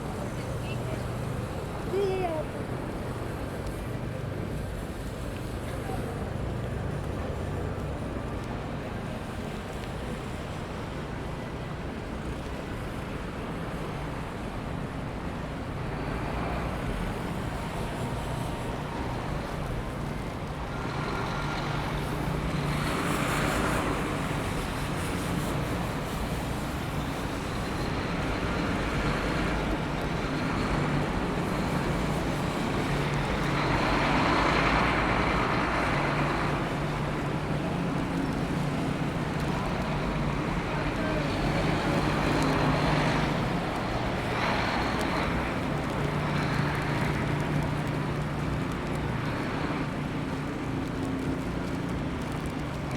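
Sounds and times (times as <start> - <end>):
traffic engine rumble: 0.0 - 52.9
vehicles passing: 12.2 - 52.9.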